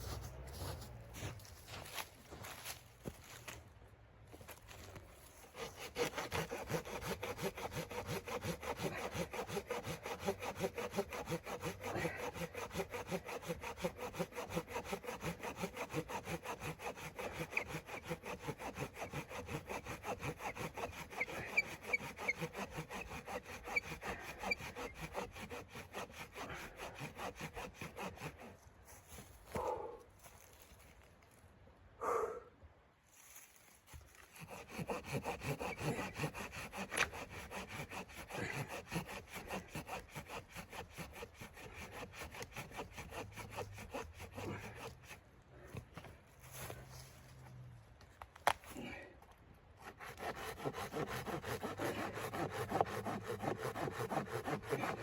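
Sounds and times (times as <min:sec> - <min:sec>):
hand saw cutting wood: 0:05.4 - 0:28.7, 0:34.1 - 0:47.1, 0:49.7 - 0:55.0.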